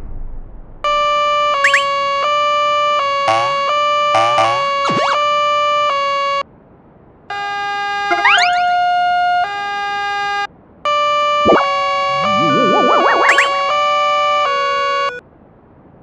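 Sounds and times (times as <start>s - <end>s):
synthesized alternating-tone warning: 1.4s - 2.4s, 3.2s - 5.8s, 7.9s - 9.0s, 11.0s - 15.2s.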